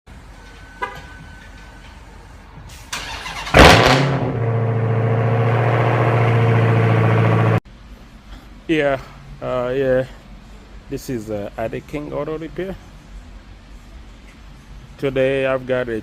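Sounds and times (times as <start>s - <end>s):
car engine cranking and idling: 0.2s - 7.6s.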